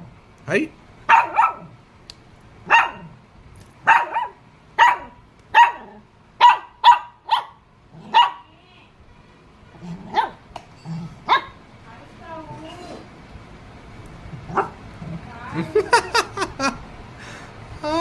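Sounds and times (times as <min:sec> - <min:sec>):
puppy yapping: 0:01.1 - 0:01.8, 0:02.7 - 0:03.2, 0:03.8 - 0:08.5, 0:10.0 - 0:10.4, 0:11.2 - 0:11.6, 0:14.5 - 0:14.8.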